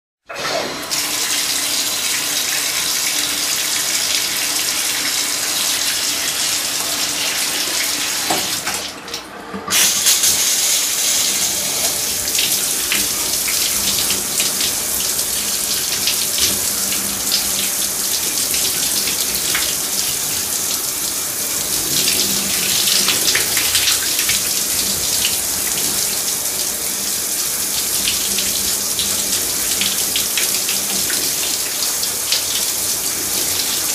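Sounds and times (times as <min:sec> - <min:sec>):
shower spray hissing: 0:09.7 - 0:33.9.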